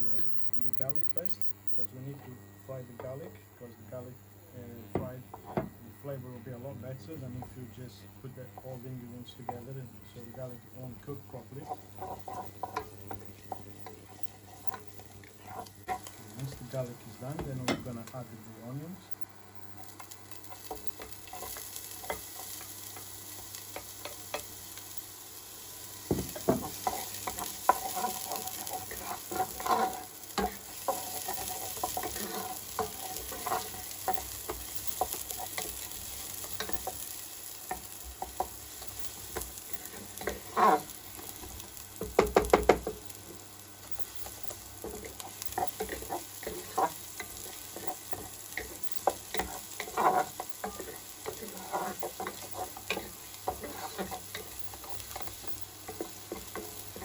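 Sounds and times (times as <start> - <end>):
garlic and onions sizzling in oil: 4.2 - 57.0
utensil scraping and knocking pan: 11.6 - 16.2, 26.0 - 37.0, 37.7 - 43.0, 44.2 - 57.0.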